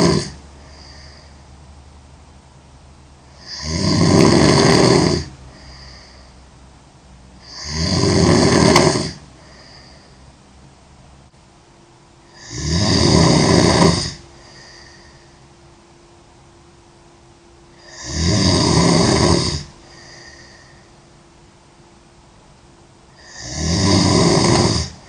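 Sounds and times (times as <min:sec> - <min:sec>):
girl snoring loudly: 0:00.0 - 0:01.3, 0:03.3 - 0:06.2, 0:07.4 - 0:10.1, 0:12.3 - 0:15.2, 0:17.7 - 0:20.9, 0:23.1 - 0:25.0.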